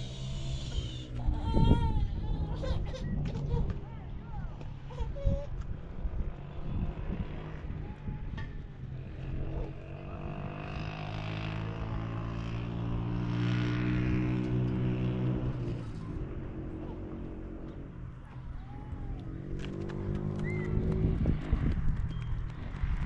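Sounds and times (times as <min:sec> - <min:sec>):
engine humming: 0:00.0 - 0:23.0.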